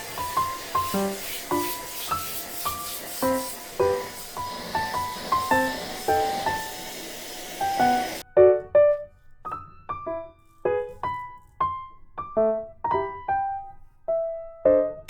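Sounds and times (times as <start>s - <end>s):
steady hiss: 0.0s - 8.2s
light keyboard melody: 7.8s - 15.0s.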